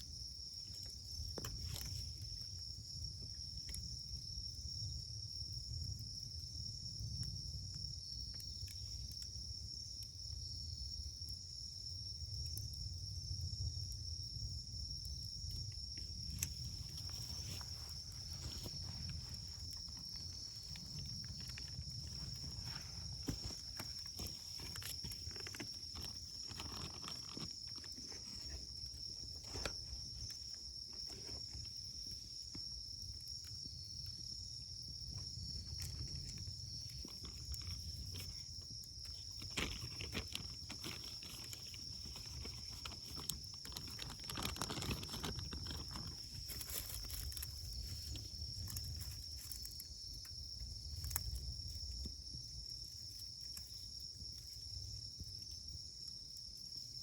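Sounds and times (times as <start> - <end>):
campfire crackling and popping: 0.5 - 31.0
high insect chirring: 14.1 - 57.0.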